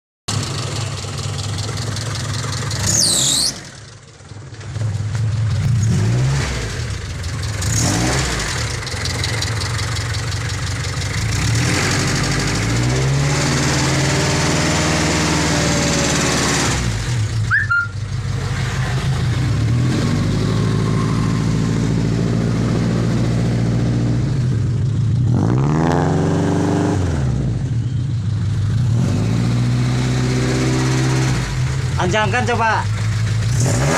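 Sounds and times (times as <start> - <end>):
car engine idling and revving: 0.3 - 33.9.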